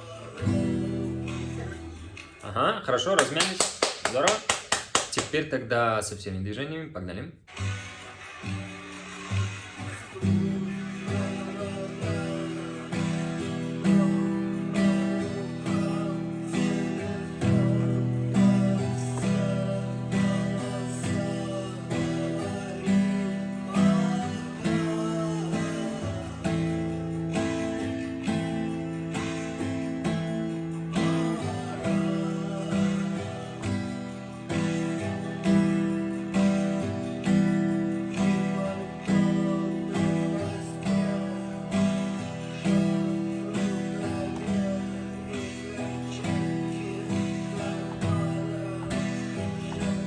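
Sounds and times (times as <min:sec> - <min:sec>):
acoustic guitar strumming: 0:00.0 - 0:05.6, 0:07.4 - 0:50.0.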